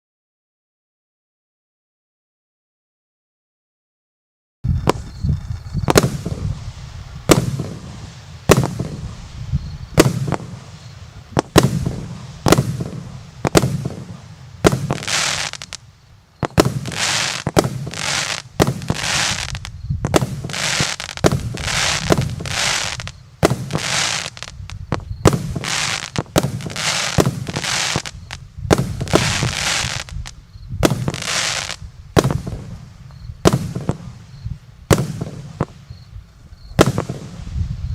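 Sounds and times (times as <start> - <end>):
firework long hiss: 4.7 - 37.9
fireworks bangs: 4.7 - 37.9.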